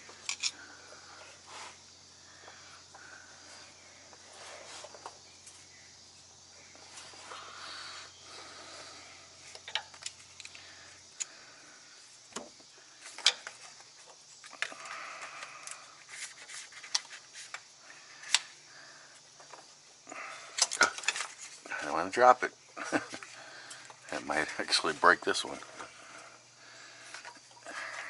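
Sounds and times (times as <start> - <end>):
tools clicking and scraping metal: 0.2 - 0.6.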